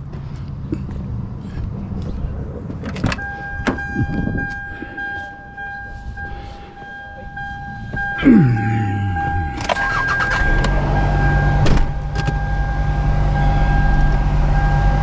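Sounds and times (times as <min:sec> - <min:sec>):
car engine starting and idling: 0:00.4 - 0:15.0
electronic warning chime: 0:03.2 - 0:11.6.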